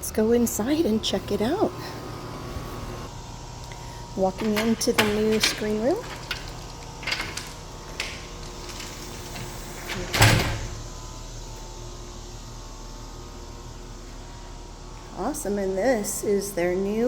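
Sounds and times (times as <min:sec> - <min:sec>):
steady low hum: 0:00.0 - 0:17.0
door thudding shut: 0:04.4 - 0:11.0.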